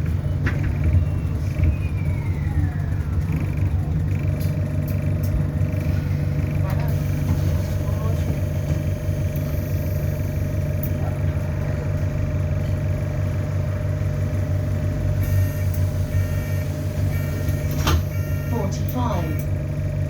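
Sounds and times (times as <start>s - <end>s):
bus engine drone: 0.0s - 20.0s
turbo whistle: 15.2s - 18.7s
short beeps: 15.2s - 19.5s.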